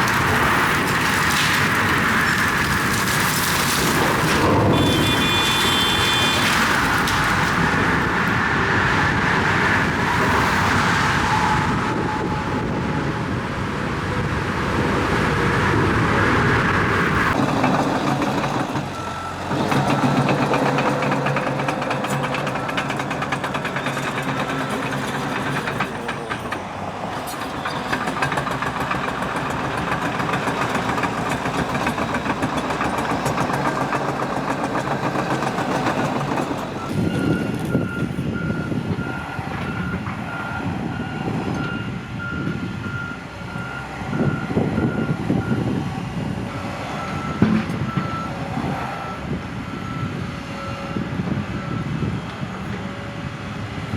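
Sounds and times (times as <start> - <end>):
heavy machinery running: 0.0 - 9.2, 16.0 - 38.0
reversing alarm beeps: 34.8 - 45.7, 46.9 - 48.4, 49.0 - 52.1.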